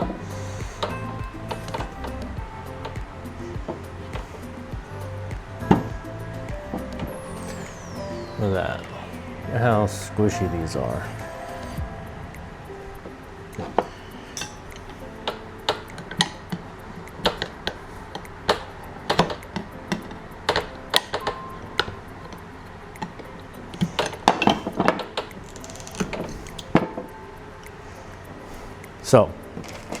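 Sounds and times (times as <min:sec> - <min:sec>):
metal tools clinking and knocking: 0:14.3 - 0:16.3, 0:29.6 - 0:30.0.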